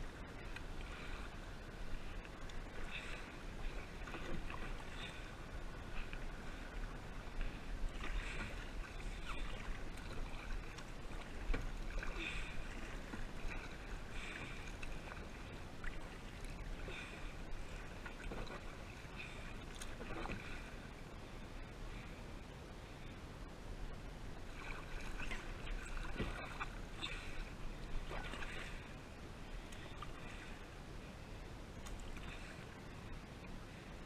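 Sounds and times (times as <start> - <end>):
paddle splashing in water: 1.9 - 20.8, 24.5 - 28.9.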